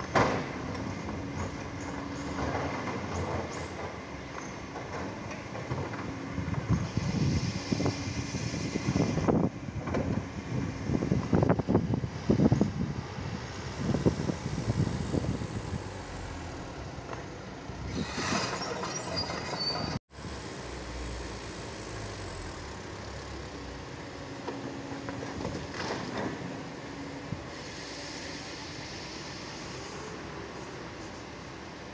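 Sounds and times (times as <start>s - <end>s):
diesel truck engines rumbling: 0.0s - 31.9s
hiss with high squeal: 6.7s - 9.3s, 17.8s - 22.7s, 27.2s - 31.9s.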